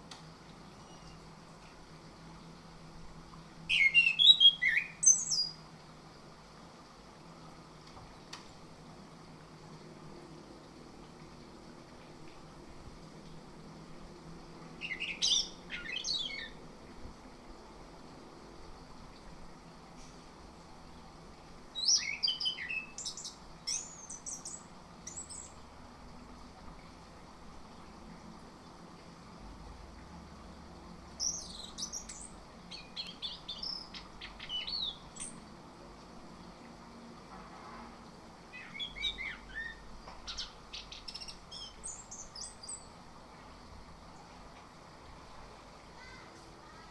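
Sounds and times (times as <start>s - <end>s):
thrush singing whistled notes: 3.7s - 5.6s, 14.8s - 16.6s, 21.8s - 25.6s, 31.2s - 35.4s, 38.6s - 42.8s.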